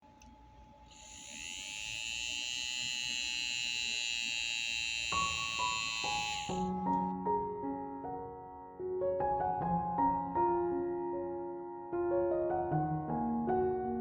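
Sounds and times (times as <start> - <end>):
small fan motor whining: 0.0 - 6.7
piano music: 5.3 - 14.0.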